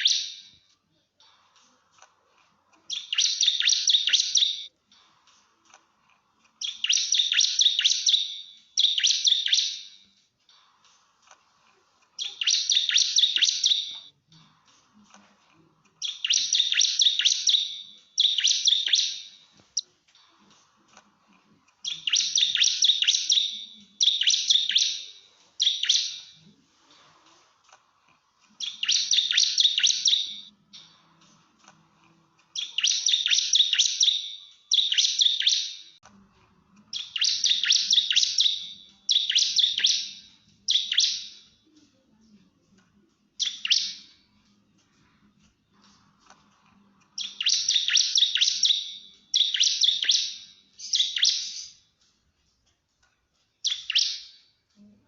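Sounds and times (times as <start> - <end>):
bird singing fast chattering notes: 0.0 - 0.6, 2.9 - 4.7, 6.6 - 10.0, 12.2 - 14.1, 16.0 - 19.8, 21.8 - 26.4, 28.6 - 30.9, 32.5 - 36.0, 36.9 - 41.5, 43.4 - 44.2, 47.2 - 51.8, 53.6 - 54.4.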